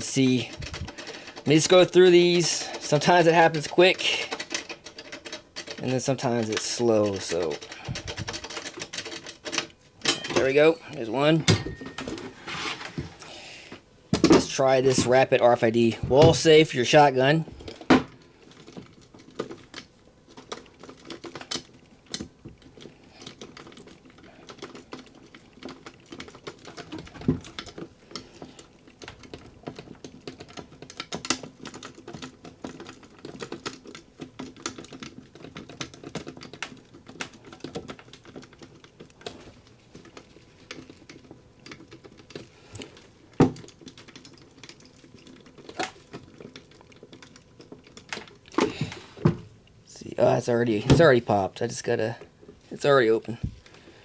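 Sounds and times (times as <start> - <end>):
small clicks and scrapes in a lock: 17.7 - 48.7.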